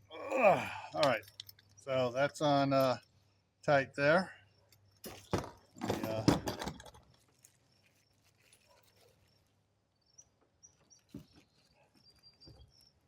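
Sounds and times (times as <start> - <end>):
insects chirping: 0.6 - 13.0
hardware clattering: 5.0 - 7.1.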